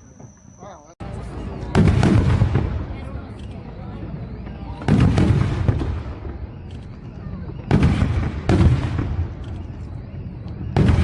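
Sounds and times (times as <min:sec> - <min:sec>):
firework shells booming: 0:01.7 - 0:11.0.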